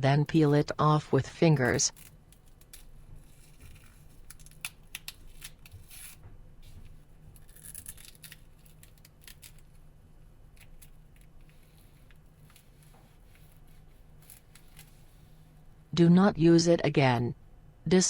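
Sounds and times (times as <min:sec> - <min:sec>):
long peeling rips: 0:01.9 - 0:06.2, 0:07.3 - 0:09.9
sticky film crackling and tearing: 0:01.9 - 0:06.2, 0:07.3 - 0:09.9, 0:10.5 - 0:15.3.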